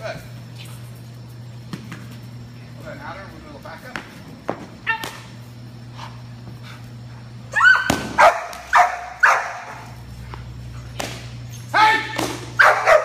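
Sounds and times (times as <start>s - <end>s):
dog barking: 8.2s - 9.8s, 12.6s - 13.0s.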